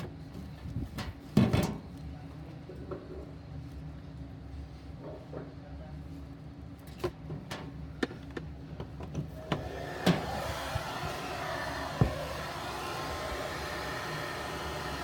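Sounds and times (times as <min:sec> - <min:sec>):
hair dryer blowing: 0:09.4 - 0:15.0.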